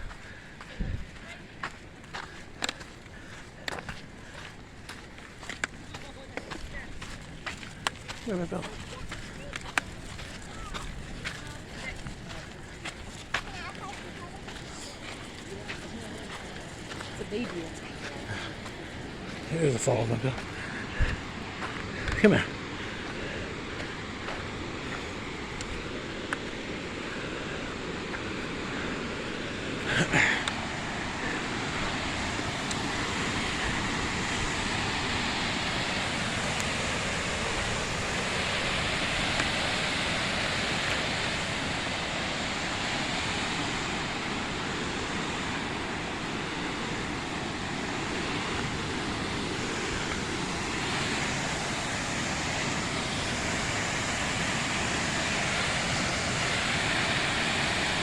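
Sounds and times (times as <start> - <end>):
waterfall rushing: 12.6 - 58.0.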